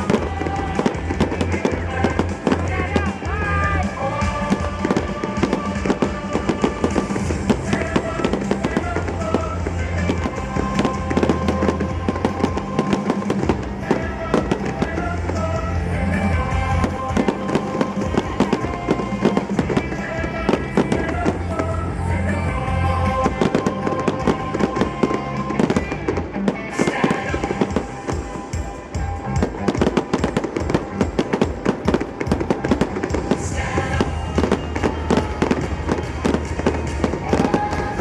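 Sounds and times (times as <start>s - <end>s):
fireworks bangs and crackles: 0.0s - 38.0s
patriotic songs playing: 0.0s - 38.0s.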